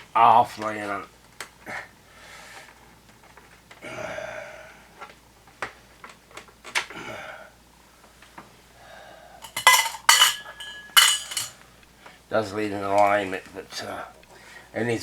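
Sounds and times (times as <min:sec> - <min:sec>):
handling small parts on a workbench: 0:09.4 - 0:11.6.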